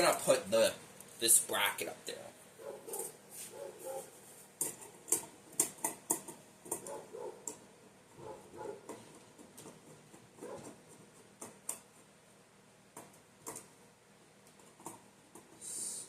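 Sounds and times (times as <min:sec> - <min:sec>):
soft rustles: 0:02.8 - 0:04.6.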